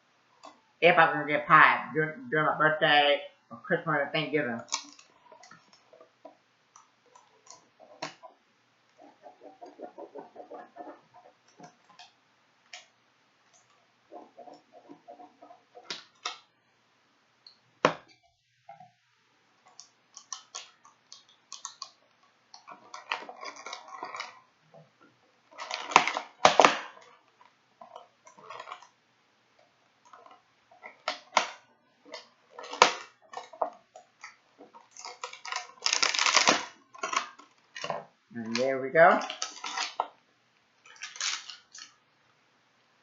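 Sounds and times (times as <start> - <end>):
plastic container clicking and crinkling: 19.7 - 29.0, 30.0 - 38.6, 39.2 - 40.2, 40.8 - 42.0.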